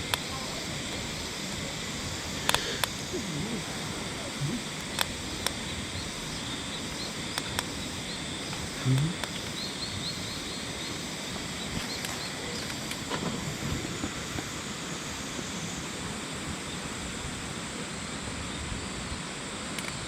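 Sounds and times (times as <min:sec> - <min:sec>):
sharp clicks: 0:02.4 - 0:03.6, 0:04.3 - 0:05.8, 0:06.4 - 0:07.9, 0:08.5 - 0:09.6.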